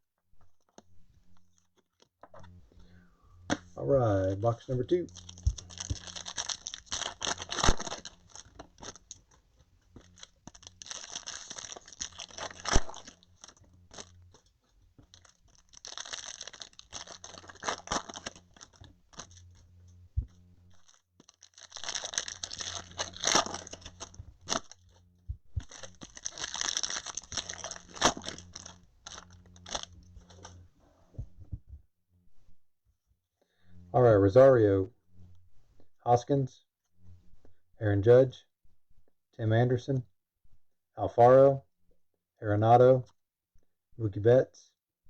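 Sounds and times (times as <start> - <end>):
wrappers crinkling: 4.9 - 30.6.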